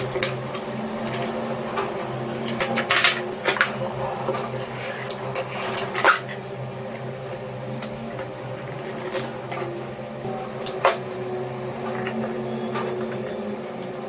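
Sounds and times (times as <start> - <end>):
steady electrical hum: 0.0 - 14.0.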